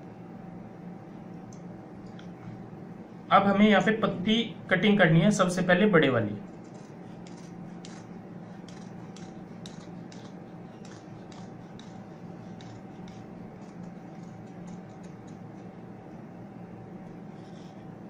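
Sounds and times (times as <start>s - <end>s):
steady background hum: 0.0s - 18.0s
scissors snipping cloth: 6.6s - 15.7s.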